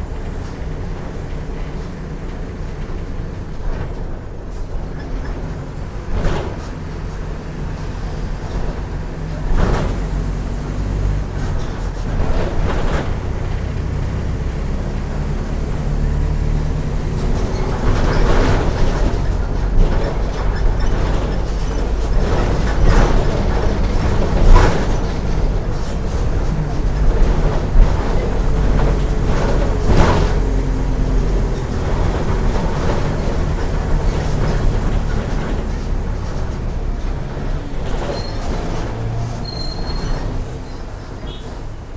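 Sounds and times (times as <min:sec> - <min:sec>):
bus diesel engine running: 0:00.0 - 0:41.9.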